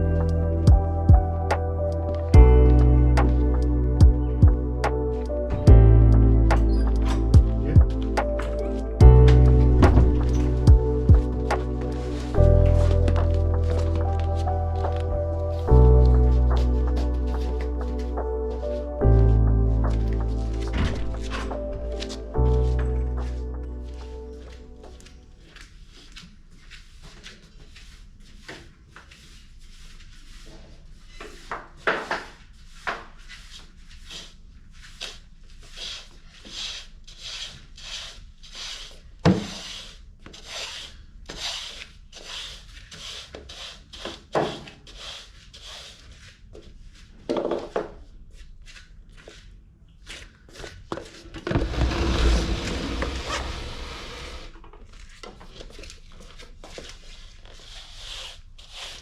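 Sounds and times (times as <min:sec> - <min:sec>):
rubbing or scrubbing strokes: 0:51.5 - 0:54.6, 0:56.7 - 0:59.0.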